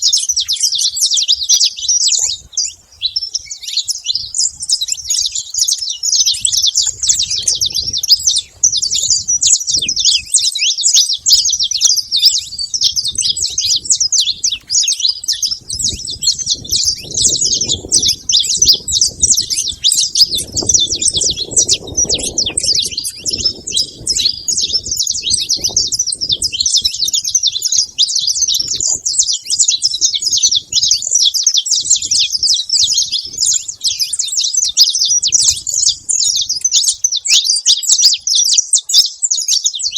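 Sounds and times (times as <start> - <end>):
flock of finches chirping: 0.0 - 39.9.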